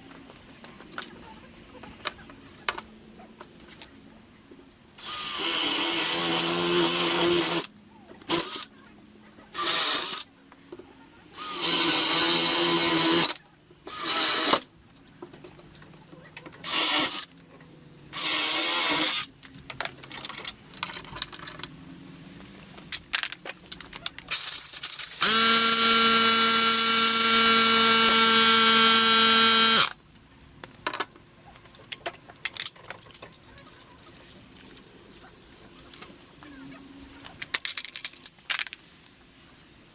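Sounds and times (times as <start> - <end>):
power tool motor whine: 11.4 - 14.6, 25.2 - 29.9.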